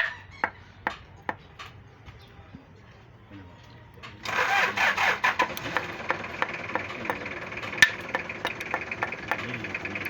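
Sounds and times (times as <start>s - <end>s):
diesel engine running: 4.2s - 10.0s
sharp regular engine tick: 4.2s - 10.0s
loud engine knock: 5.4s - 10.0s.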